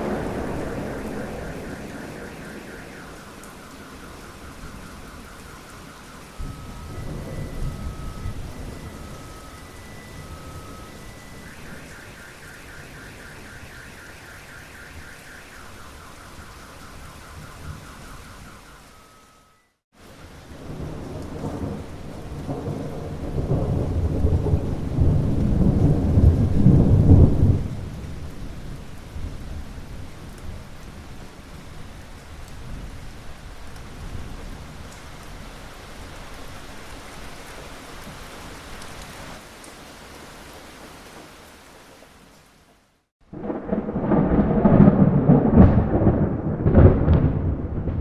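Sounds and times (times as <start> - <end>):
rolling thunder rumble: 0.0 - 19.0, 20.4 - 36.2, 43.2 - 48.0
pulsing high tone: 0.0 - 19.8
steady rain: 0.0 - 48.0.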